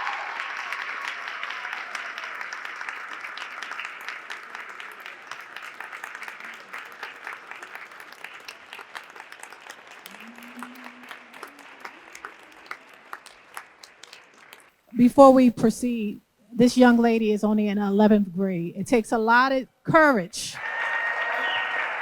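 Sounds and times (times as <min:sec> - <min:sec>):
audience applauding: 0:00.0 - 0:14.8, 0:20.6 - 0:22.0.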